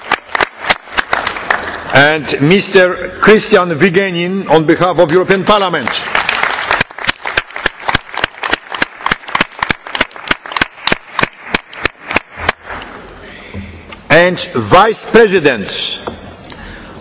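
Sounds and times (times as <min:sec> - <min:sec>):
people applauding: 0:00.0 - 0:02.0, 0:05.0 - 0:12.6.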